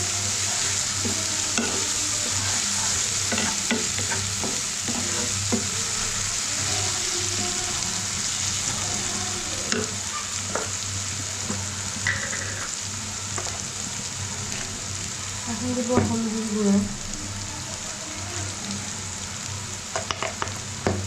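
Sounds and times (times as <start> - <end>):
curry sizzling in a pan: 0.0 - 21.0
spoon scraping and knocking pan: 1.0 - 5.8, 9.6 - 10.8, 11.4 - 12.8.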